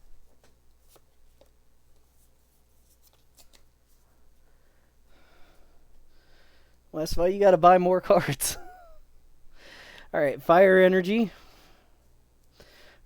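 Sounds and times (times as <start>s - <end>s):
trading cards rustling: 0.3s - 4.0s.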